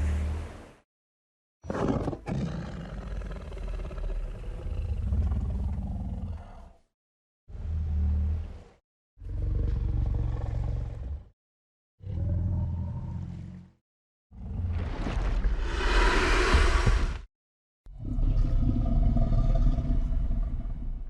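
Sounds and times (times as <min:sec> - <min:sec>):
deep monster roars: 0:17.9 - 0:21.0.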